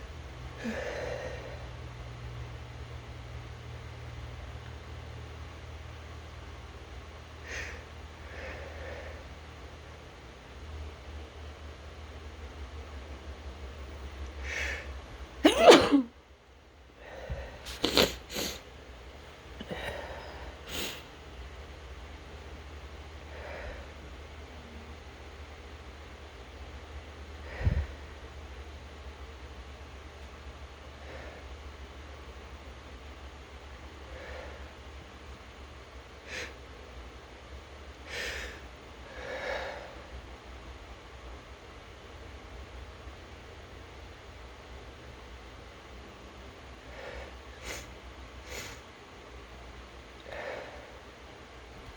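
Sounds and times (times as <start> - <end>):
person sneezing: 15.4 - 16.1, 17.7 - 18.6
person sniffing: 15.5 - 16.1, 17.6 - 18.7, 20.7 - 21.1, 48.5 - 48.8.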